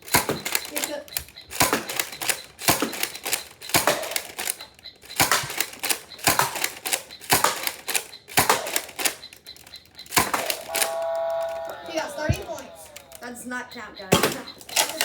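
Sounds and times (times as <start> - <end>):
toy blaster plastic clack: 0.0 - 13.2, 13.9 - 15.0.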